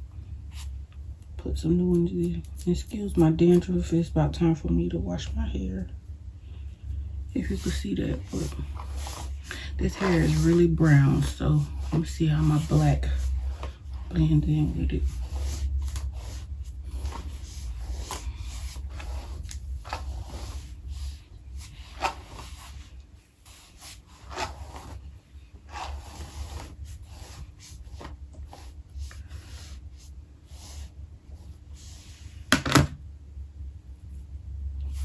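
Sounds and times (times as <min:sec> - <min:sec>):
low hum: 0:00.0 - 0:35.0
hair rubbing and rustling: 0:07.4 - 0:32.8.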